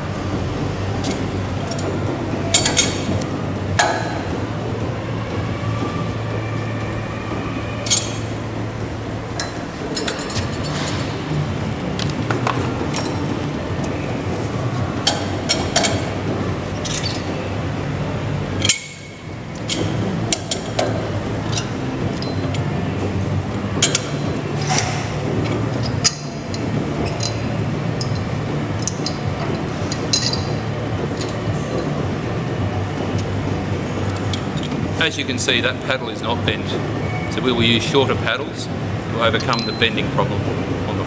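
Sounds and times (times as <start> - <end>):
low mechanical hum: 0.0 - 41.0.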